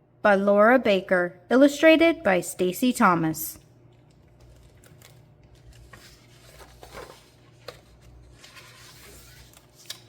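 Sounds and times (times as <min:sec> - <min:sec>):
low steady hum: 0:00.0 - 0:10.0
book pages rustling: 0:04.1 - 0:10.0.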